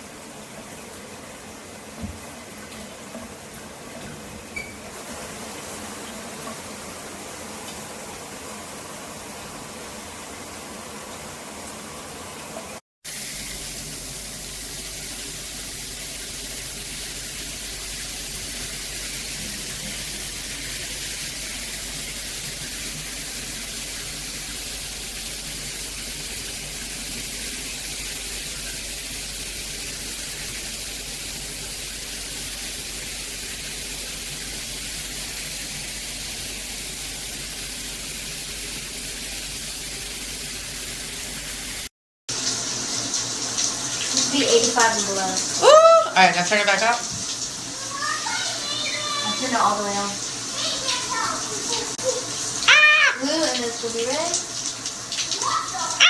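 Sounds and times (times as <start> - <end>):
water spraying from shower head: 13.1 - 56.0.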